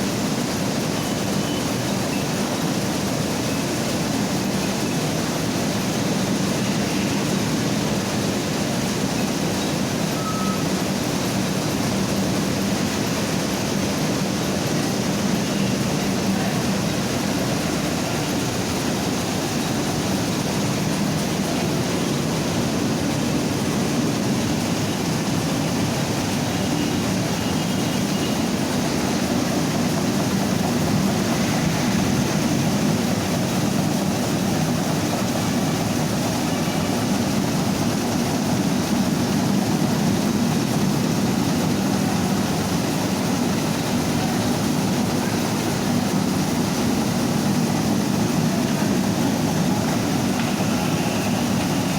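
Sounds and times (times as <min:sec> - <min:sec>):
milling machine droning: 0:00.1 - 0:51.9.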